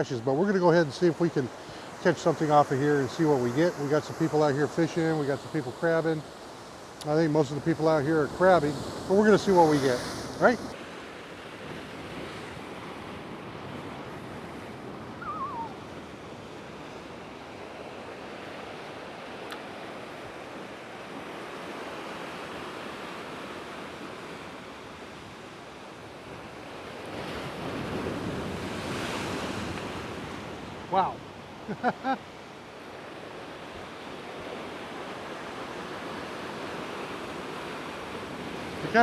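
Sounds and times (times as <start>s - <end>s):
surf breaking against rocks: 0.9s - 11.1s
wavering high call: 15.2s - 15.9s.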